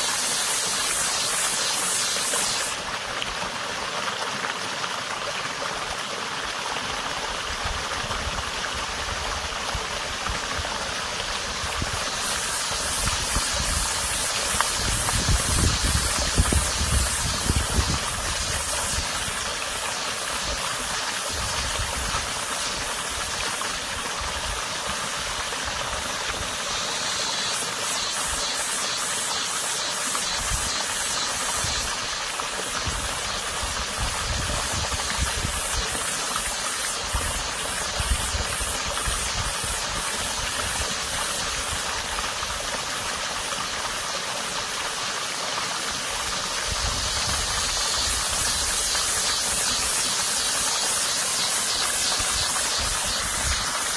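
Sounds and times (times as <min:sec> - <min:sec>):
cicada buzzing: 0:00.0 - 0:02.9, 0:11.0 - 0:44.9, 0:45.8 - 0:53.9
stream water rushing: 0:00.0 - 0:53.9.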